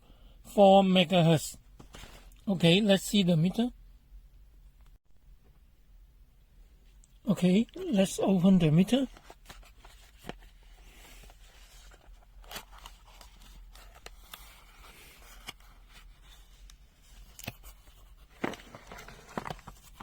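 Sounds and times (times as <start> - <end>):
packaging rustling and scraping: 9.0 - 20.0.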